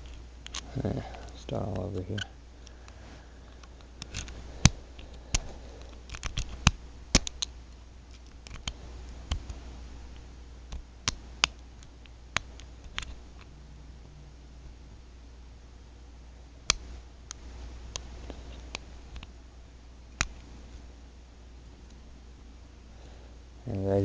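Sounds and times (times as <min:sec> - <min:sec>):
lock pick clicking on pins: 0:06.1 - 0:07.5.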